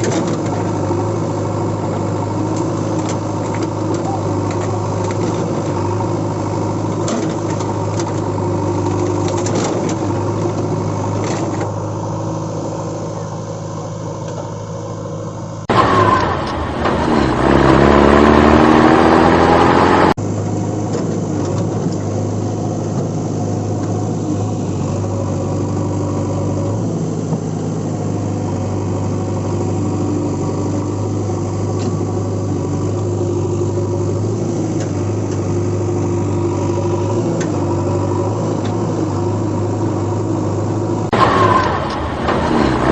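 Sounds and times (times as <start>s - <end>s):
loud engine revving: 0.0s - 14.2s, 15.1s - 42.9s
engine idling hum: 0.0s - 42.9s.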